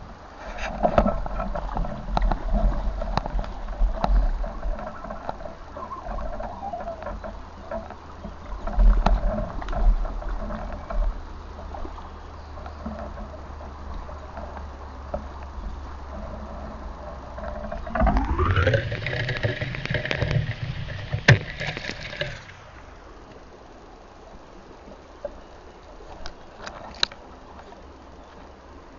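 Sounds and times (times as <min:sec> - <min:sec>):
stream water running: 0:00.0 - 0:28.9
low thumps: 0:17.3 - 0:22.5.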